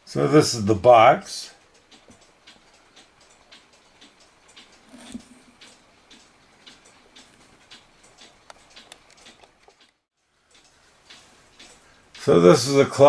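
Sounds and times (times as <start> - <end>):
mechanical clock ticking: 0.0 - 13.0.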